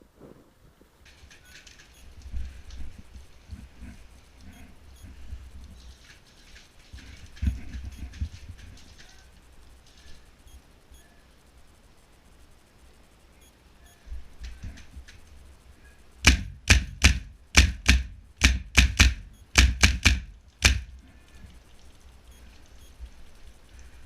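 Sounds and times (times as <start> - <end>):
airsoft rifle shots: 16.2 - 21.0.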